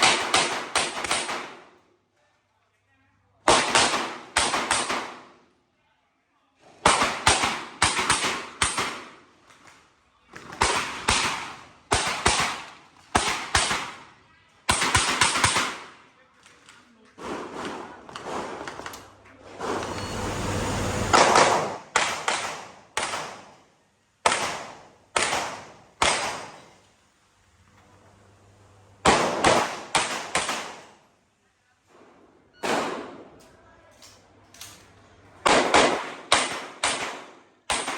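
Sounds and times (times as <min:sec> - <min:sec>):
handgun shots echoing: 0:00.0 - 0:01.6, 0:29.1 - 0:30.9, 0:35.5 - 0:37.9.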